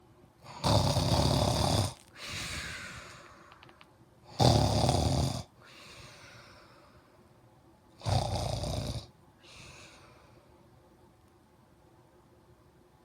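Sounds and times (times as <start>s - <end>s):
loud rattling snoring: 0.5s - 2.0s, 4.4s - 5.5s, 8.0s - 9.1s
quiet long breath: 2.1s - 3.8s, 5.6s - 7.3s, 9.4s - 10.6s.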